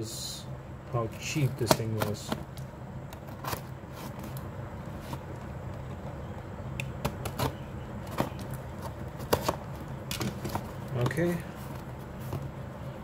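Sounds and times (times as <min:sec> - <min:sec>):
steady low hum: 0:00.0 - 0:13.0
cardboard box being handled: 0:03.2 - 0:06.1, 0:07.2 - 0:12.7.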